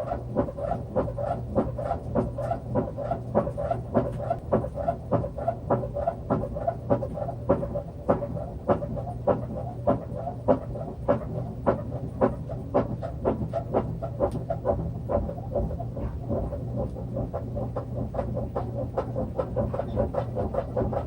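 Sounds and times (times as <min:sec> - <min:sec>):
washing machine humming: 0:00.0 - 0:21.0.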